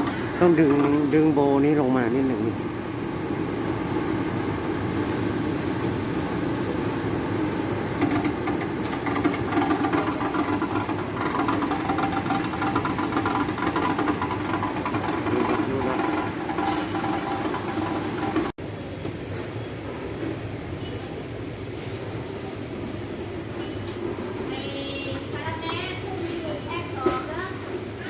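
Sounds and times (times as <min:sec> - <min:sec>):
air conditioner blower hum: 0:00.0 - 0:28.0
rapid rattling clatter: 0:08.0 - 0:18.5.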